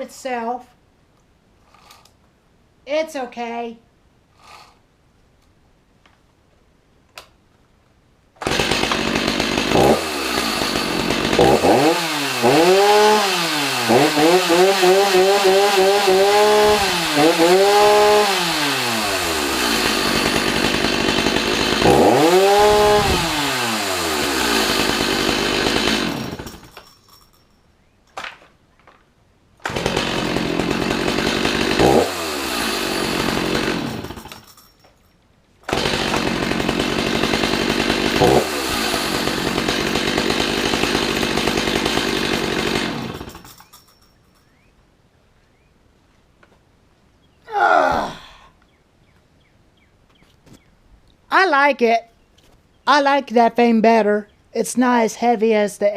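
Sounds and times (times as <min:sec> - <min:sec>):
chainsaw engine revving: 0:04.4 - 0:04.8, 0:08.4 - 0:26.8, 0:29.6 - 0:34.5, 0:35.7 - 0:43.8.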